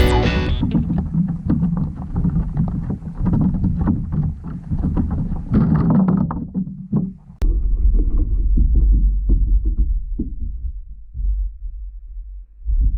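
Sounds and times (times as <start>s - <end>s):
low underwater rumble: 7.4s - 12.9s.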